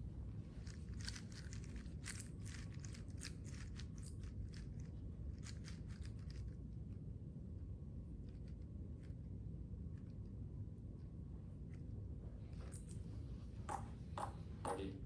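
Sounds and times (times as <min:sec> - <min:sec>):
low room rumble: 0:00.0 - 0:15.0.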